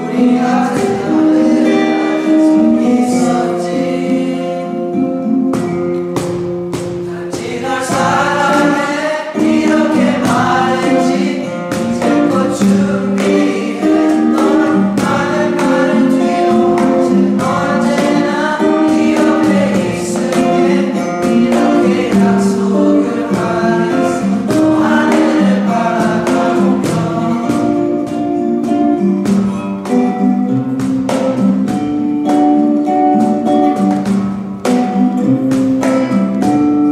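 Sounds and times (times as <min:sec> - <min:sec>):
choir singing: 0:00.0 - 0:05.4, 0:07.0 - 0:29.0
strummed guitar: 0:00.0 - 0:36.9.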